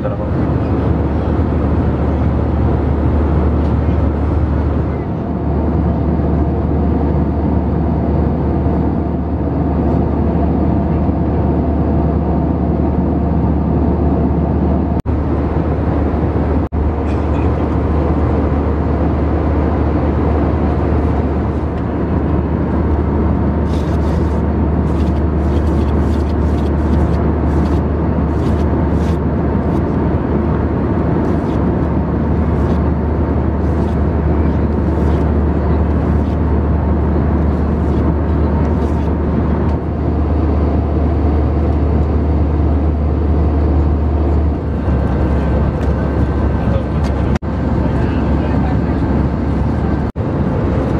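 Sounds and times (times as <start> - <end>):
aircraft cabin engine drone: 0.0 - 50.9.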